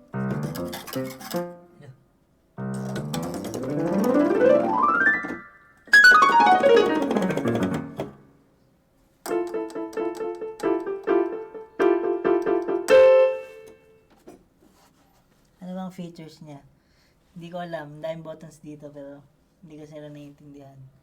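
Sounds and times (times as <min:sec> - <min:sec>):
electronic keyboard runs and chords: 0:02.7 - 0:08.2, 0:09.3 - 0:13.7.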